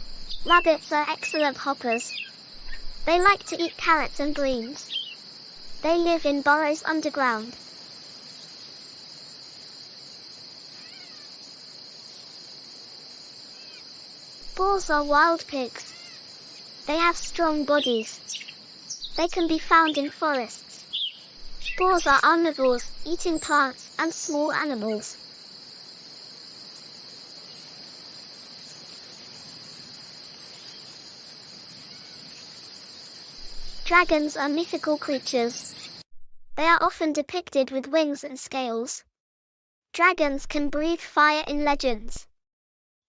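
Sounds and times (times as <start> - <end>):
faint bird chirp: 0.0 - 6.3, 15.7 - 24.0, 31.7 - 34.1
insect chorus trilling: 0.0 - 36.0.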